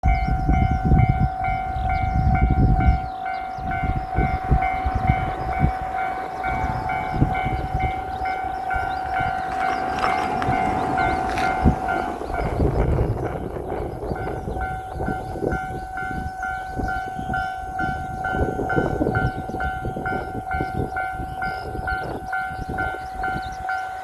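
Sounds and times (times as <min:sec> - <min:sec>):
level crossing warning bell: 0:00.0 - 0:24.0
low rumble: 0:00.4 - 0:15.4.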